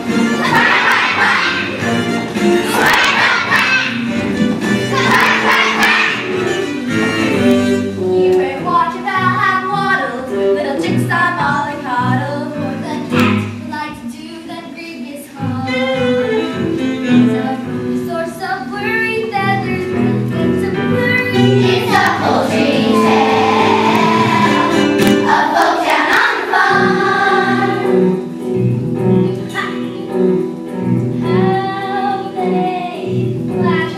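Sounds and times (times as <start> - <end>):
instrumental accompaniment: 0.0 - 13.9, 15.3 - 33.9
children singing: 0.3 - 2.0, 2.6 - 4.1, 4.9 - 6.3, 21.5 - 28.1.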